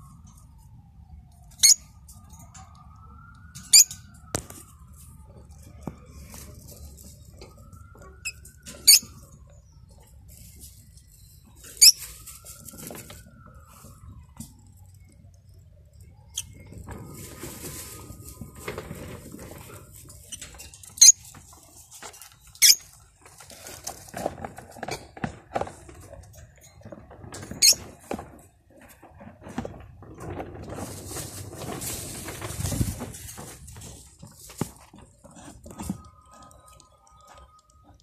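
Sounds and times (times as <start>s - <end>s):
rustling: 16.4s - 37.4s.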